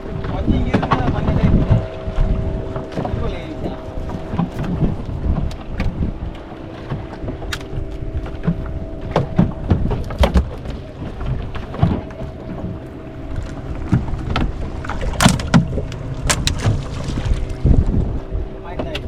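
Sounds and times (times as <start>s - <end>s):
boat engine humming: 0.0s - 19.0s
knocks and thumps on boat: 0.0s - 19.0s.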